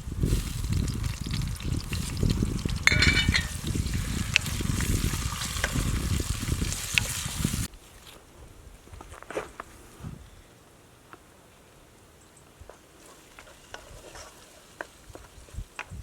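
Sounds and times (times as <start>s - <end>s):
food sizzling in a pot: 0.0s - 7.7s
metallic clink: 2.9s - 3.6s.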